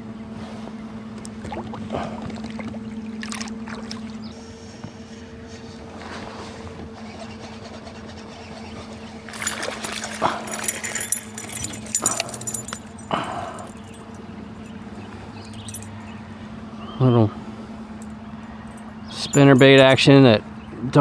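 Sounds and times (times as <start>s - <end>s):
water lapping around a kayak: 0.1s - 11.0s.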